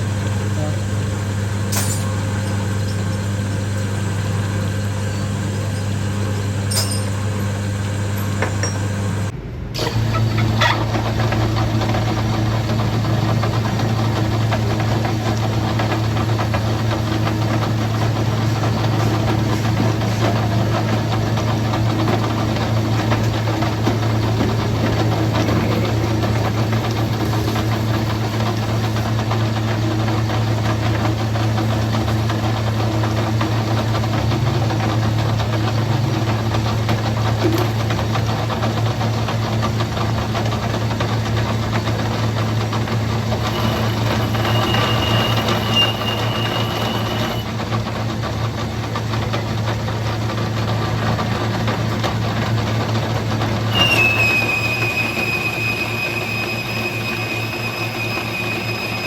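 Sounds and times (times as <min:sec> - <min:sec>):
motor-driven machine humming: 0:13.3 - 0:30.8
thin high whine: 0:43.4 - 0:47.5, 0:53.7 - 0:59.0.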